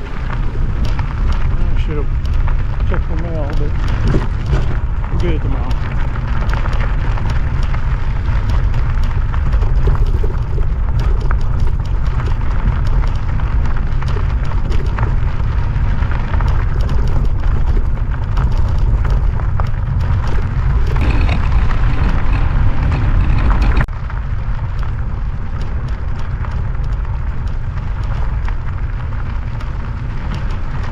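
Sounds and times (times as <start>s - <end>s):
wind buffeting microphone: 0.0s - 30.9s.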